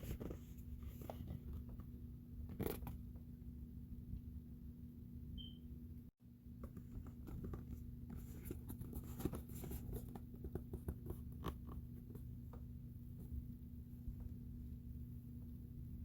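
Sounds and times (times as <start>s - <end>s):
steady low hum: 0.0s - 16.0s
cardboard and plastic rustling: 6.7s - 12.2s.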